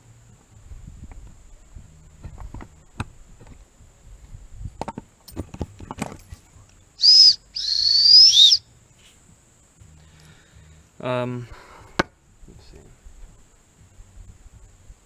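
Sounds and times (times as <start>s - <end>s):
high-pitched whistled notes: 7.0s - 8.6s.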